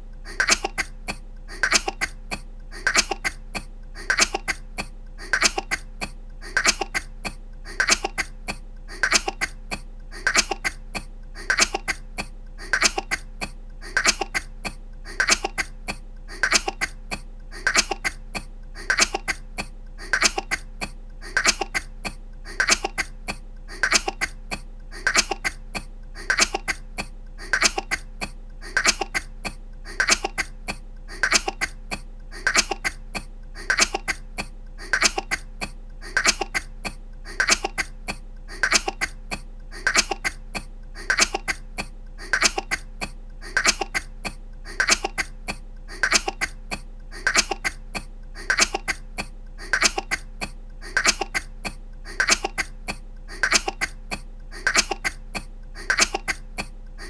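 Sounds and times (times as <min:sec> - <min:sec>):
faint steady hum: 0:00.0 - 0:57.0
woman coughing: 0:00.3 - 0:56.7.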